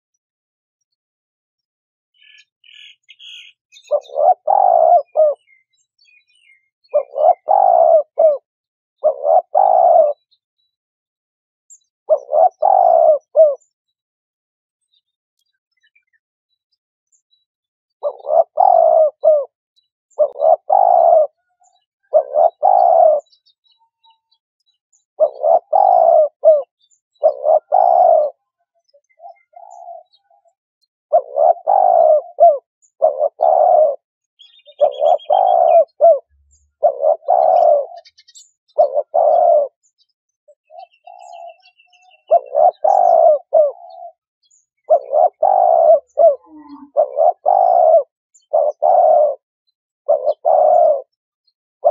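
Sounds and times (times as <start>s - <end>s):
small bird chirping: 2.1s - 10.8s, 11.7s - 14.0s, 14.8s - 51.9s
dove cooing: 2.2s - 5.7s, 6.4s - 10.3s, 12.1s - 13.7s, 18.0s - 23.4s, 25.2s - 39.8s, 40.6s - 44.2s, 44.8s - 49.4s, 50.0s - 51.2s.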